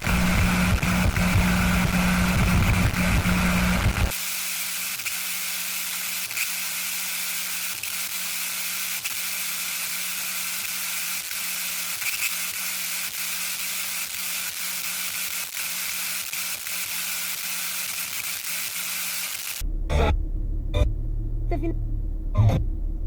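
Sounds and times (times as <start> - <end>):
low hum: 0.0 - 4.1, 19.6 - 23.0
burst of noise: 0.0 - 5.4
radio static hiss: 0.0 - 20.2.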